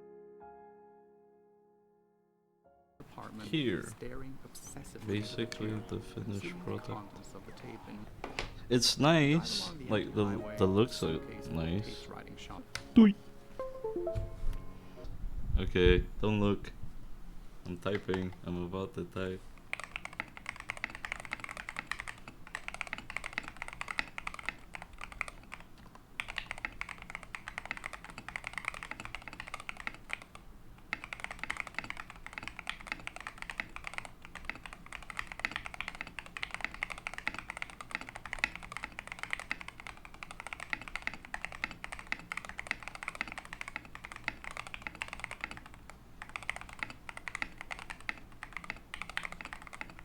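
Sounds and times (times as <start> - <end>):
mechanical keyboard typing: 19.6 - 50.0.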